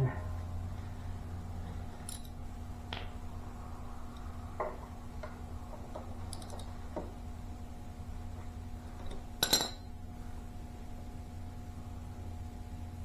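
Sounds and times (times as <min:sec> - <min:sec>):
steady low hum: 0:00.0 - 0:13.0
metallic tool clicks and clinks: 0:02.1 - 0:02.4.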